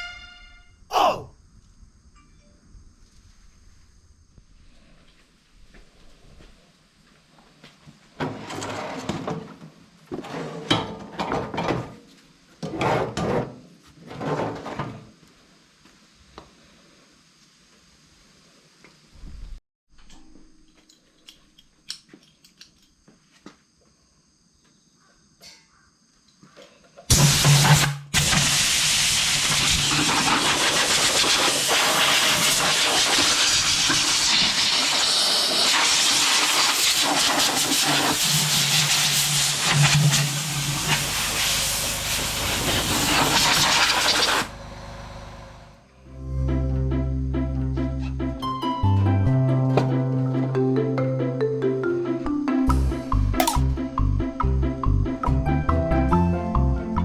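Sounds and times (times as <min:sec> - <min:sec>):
loud steady hiss: 0:27.1 - 0:44.6.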